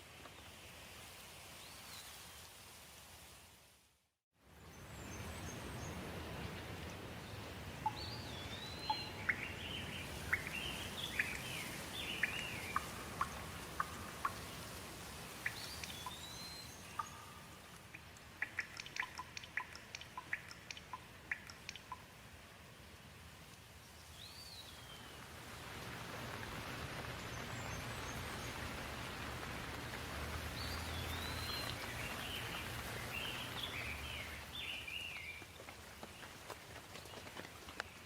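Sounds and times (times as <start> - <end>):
steady rain: 0.0 - 38.0
birds singing: 7.8 - 14.6, 15.4 - 17.5, 30.5 - 35.4
sharp drips: 7.8 - 22.2.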